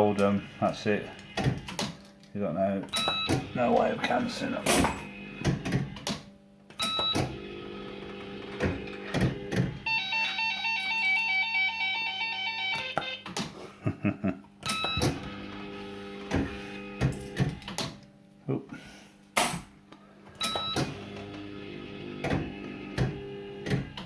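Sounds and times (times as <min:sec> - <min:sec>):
mechanical clunks of buttons and reels: 0:02.9 - 0:03.9, 0:04.6 - 0:07.4, 0:14.6 - 0:15.6, 0:20.4 - 0:21.4.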